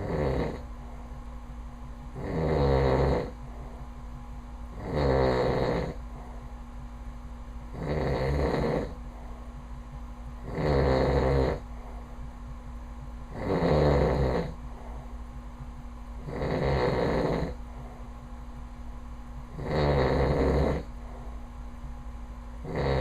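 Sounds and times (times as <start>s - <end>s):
man snoring loudly: 0.0s - 0.6s, 2.2s - 3.4s, 4.8s - 6.0s, 7.8s - 9.0s, 10.5s - 11.6s, 13.4s - 14.6s, 16.2s - 17.6s, 19.6s - 20.9s, 22.6s - 23.0s
faint steady hum: 0.0s - 23.0s.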